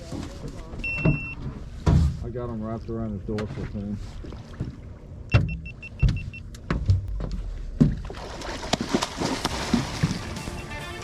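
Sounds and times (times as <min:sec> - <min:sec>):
heavy knocks and thumps: 0:01.8 - 0:02.3, 0:05.4 - 0:08.2.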